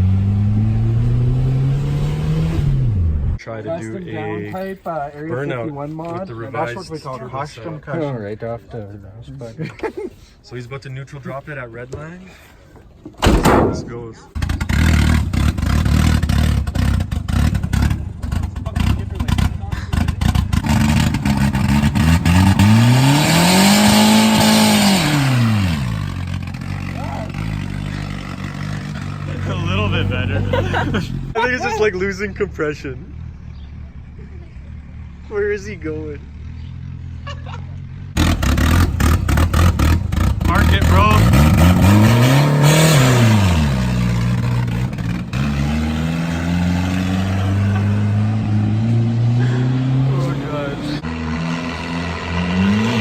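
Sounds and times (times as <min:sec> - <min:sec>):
car engine revving hard: 0:00.0 - 0:03.4, 0:14.4 - 0:31.4, 0:38.1 - 0:53.0.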